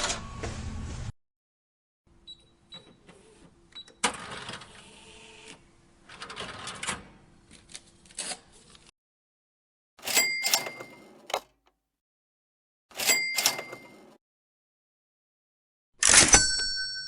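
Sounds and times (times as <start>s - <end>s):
cash register beeps: 2.2s - 3.1s, 3.7s - 4.4s, 10.0s - 11.6s, 12.9s - 14.2s
clicks and rattles: 10.0s - 11.6s.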